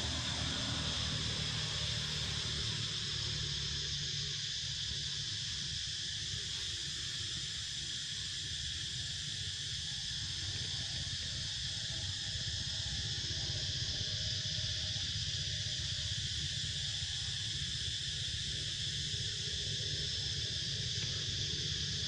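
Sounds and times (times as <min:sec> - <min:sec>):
high-pitched insect chorus: 0:00.0 - 0:22.0.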